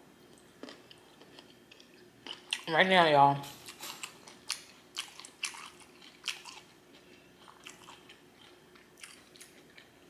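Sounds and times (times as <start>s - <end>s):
mouth chewing food: 3.7s - 10.0s.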